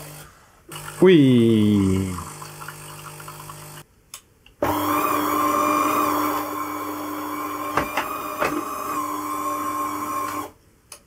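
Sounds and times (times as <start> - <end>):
coffee machine motor hum: 1.8 - 3.8, 4.6 - 10.6.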